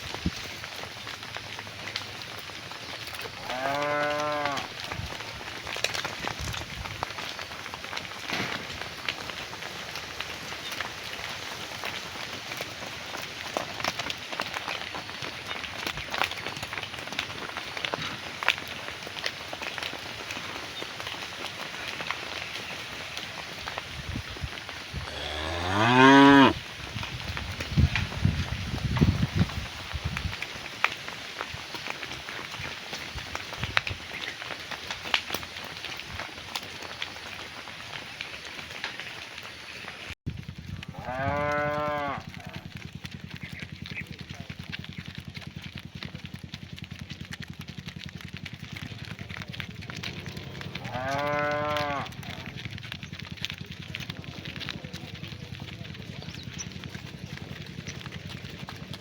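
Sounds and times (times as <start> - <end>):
cow mooing: 3.4 - 4.8, 25.1 - 26.6, 41.0 - 42.4, 50.0 - 52.2
small motorcycle engine running: 40.3 - 59.0.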